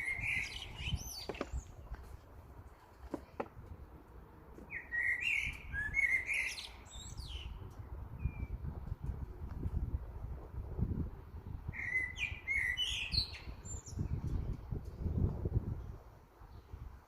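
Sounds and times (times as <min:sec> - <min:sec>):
songbird warbling: 0:00.0 - 0:01.8.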